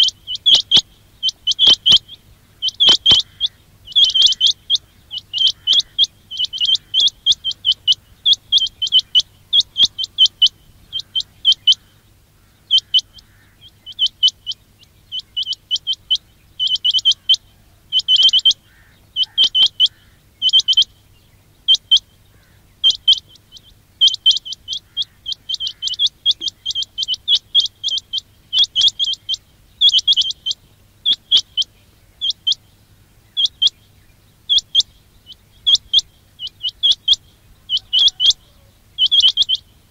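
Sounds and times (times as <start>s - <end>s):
quail chirping: 0.0s - 39.9s.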